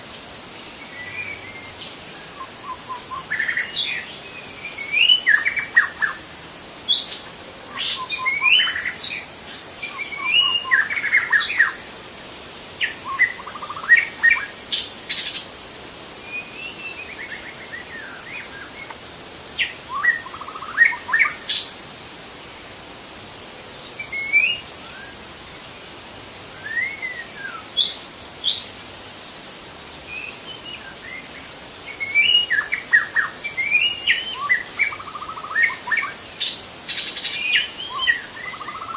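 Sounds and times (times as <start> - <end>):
high-pitched insect drone: 0.0 - 38.9
bird singing whistled phrases: 9.9 - 11.7, 26.6 - 28.8.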